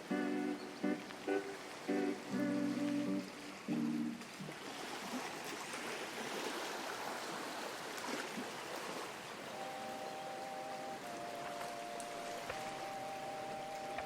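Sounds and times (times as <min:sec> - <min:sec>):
plucked lofi music notes: 0:00.0 - 0:04.4, 0:09.5 - 0:14.0
small waves lapping: 0:00.0 - 0:14.0.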